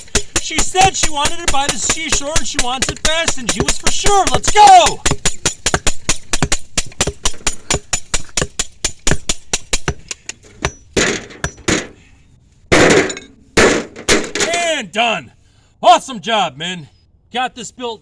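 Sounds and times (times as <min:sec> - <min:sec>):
rapid hammering: 0:00.0 - 0:12.0, 0:12.7 - 0:14.6.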